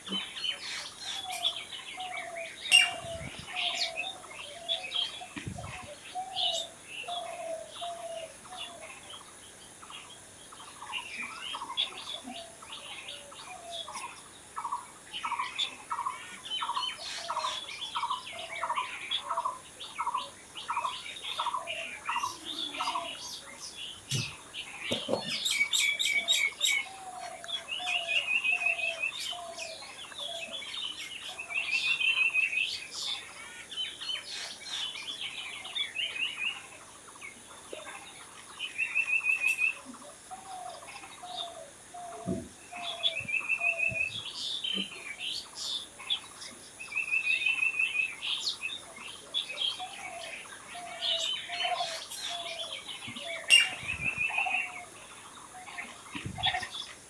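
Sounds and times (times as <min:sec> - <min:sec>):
wild birds chirping: 0:00.0 - 0:57.0
lower-pitched bird notes: 0:49.6 - 0:56.9.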